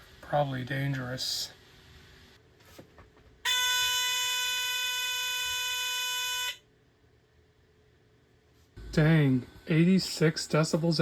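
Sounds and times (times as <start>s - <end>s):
smoke detector alarm tone: 3.5s - 6.7s.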